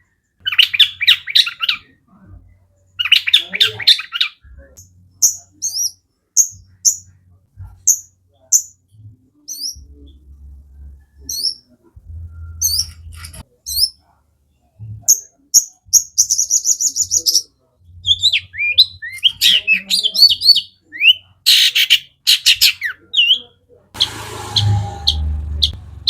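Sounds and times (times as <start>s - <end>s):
bird singing high chirps: 12.3s - 13.1s
gliding whistles: 24.0s - 26.0s
harsh scolding rasp: 24.0s - 26.0s.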